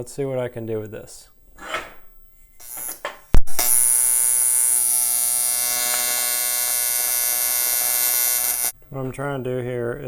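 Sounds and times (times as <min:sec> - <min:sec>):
welding arc buzzing: 0:02.6 - 0:08.8
welding arc crack: 0:02.6 - 0:08.8.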